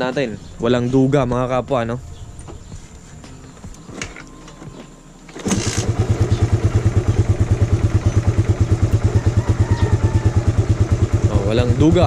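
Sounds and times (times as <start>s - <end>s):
motorcycle engine starting and idling: 4.0s - 12.0s.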